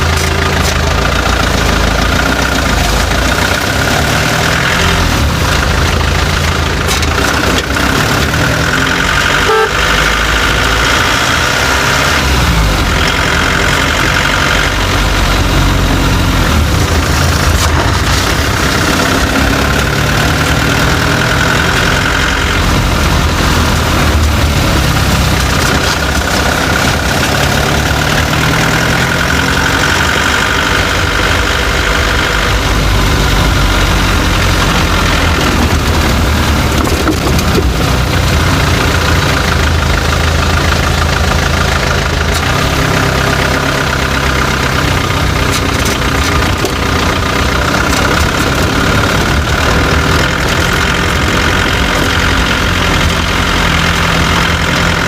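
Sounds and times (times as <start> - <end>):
engine running: 0.0 - 55.0
knocking rattle underneath vehicle: 35.2 - 39.6.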